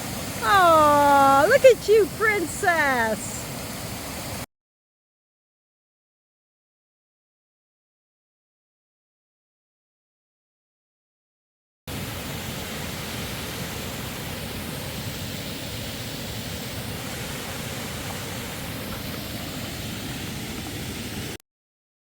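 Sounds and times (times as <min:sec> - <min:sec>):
waterfall rushing: 0:00.0 - 0:04.4, 0:11.9 - 0:21.4.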